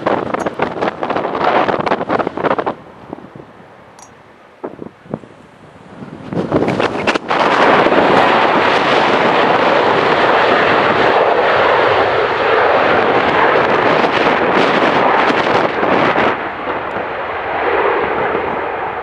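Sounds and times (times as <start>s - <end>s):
jet engine roar: 0.0s - 19.0s
wind knocks on microphone: 6.1s - 9.2s.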